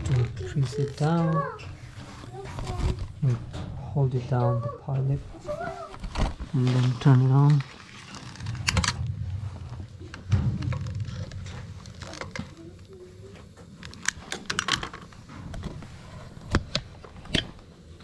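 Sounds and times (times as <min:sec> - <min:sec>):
low rumble: 0:07.6 - 0:14.0.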